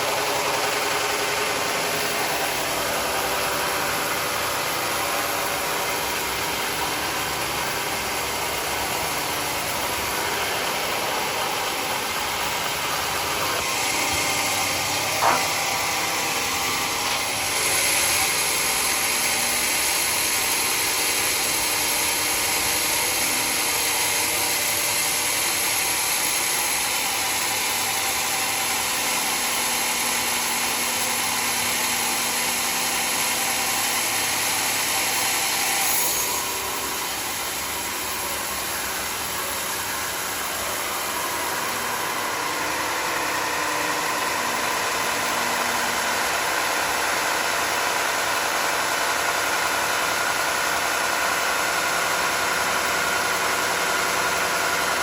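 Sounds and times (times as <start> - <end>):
sawmill machinery running: 0.0 - 55.0
sharp knock: 15.1 - 15.6.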